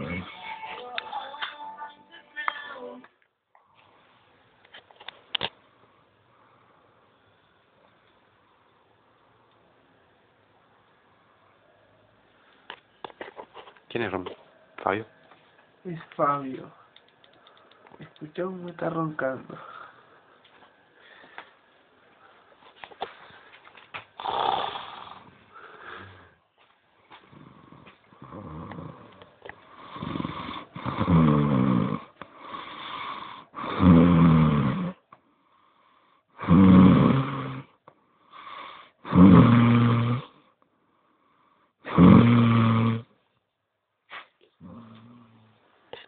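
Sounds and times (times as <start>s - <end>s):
man snoring loudly: 0.0s - 0.3s, 24.2s - 25.3s, 27.3s - 29.1s, 29.8s - 35.0s, 36.4s - 37.8s, 39.0s - 40.4s, 41.8s - 43.1s.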